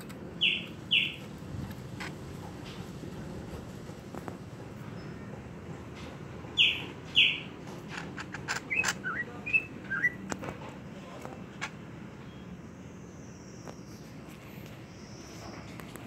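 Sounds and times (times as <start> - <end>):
bird clicking notes and chirps: 0.4 - 1.3, 8.2 - 10.4.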